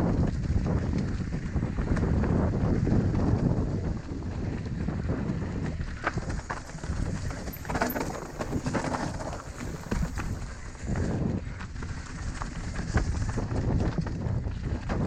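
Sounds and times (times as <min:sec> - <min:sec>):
wind rumble on microphone: 0:00.0 - 0:15.0
bike tyres knocking and rattling: 0:06.0 - 0:10.6.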